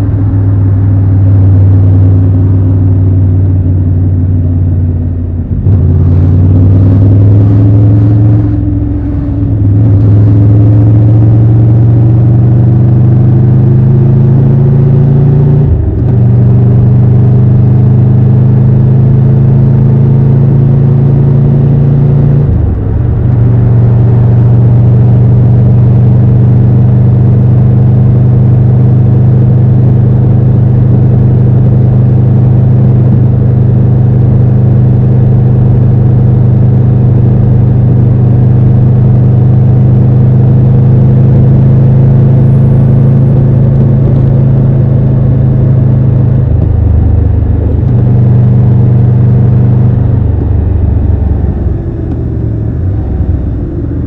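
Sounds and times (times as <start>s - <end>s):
motorcycle engine running: 0.0s - 54.0s.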